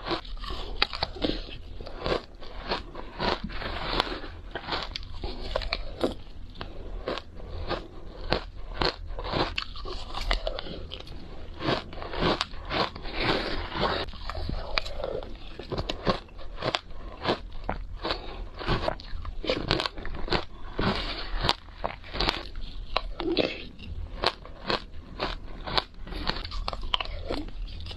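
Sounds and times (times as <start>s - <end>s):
crunchy shaved ice chewing: 0.0s - 27.9s.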